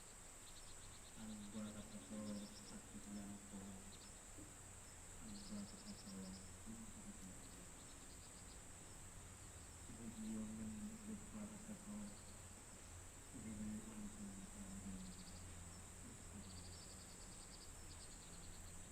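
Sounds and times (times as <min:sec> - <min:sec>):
crickets and insects chorus: 0:00.0 - 0:18.9
distant person chanting prayer: 0:01.2 - 0:03.8, 0:05.2 - 0:07.8, 0:09.9 - 0:12.2, 0:13.4 - 0:15.2.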